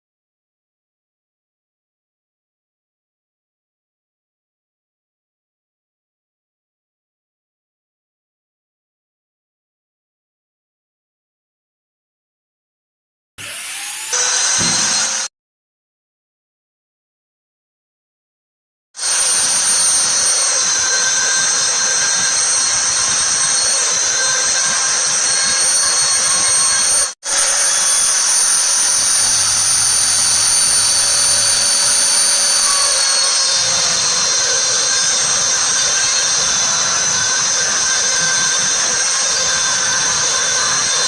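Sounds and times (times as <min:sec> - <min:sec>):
router spindle high-pitched whine: 0:13.4 - 0:15.3, 0:19.0 - 0:41.0.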